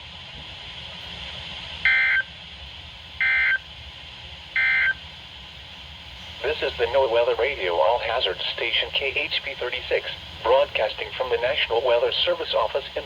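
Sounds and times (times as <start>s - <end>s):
radio hiss: 4.5s - 13.0s.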